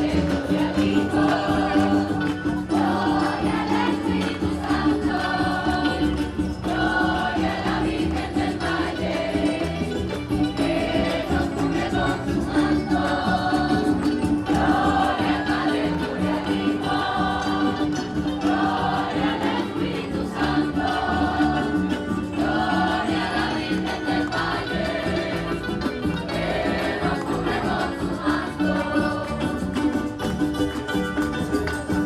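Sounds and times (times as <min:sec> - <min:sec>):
choir singing a hymn: 0:00.0 - 0:30.2
instrumental accompaniment: 0:00.0 - 0:32.0.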